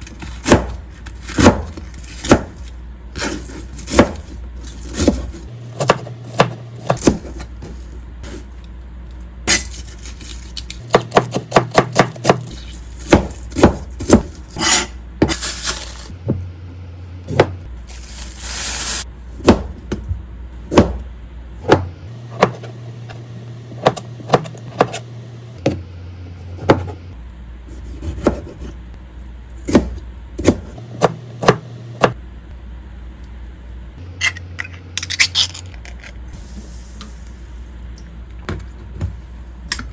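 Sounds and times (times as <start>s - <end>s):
knife chopping on cutting board: 0.2s - 2.6s, 3.2s - 4.3s, 4.9s - 7.4s, 10.9s - 15.4s, 19.4s - 20.1s, 20.7s - 22.8s, 23.7s - 25.0s, 26.5s - 27.0s, 27.8s - 28.7s, 29.7s - 32.2s.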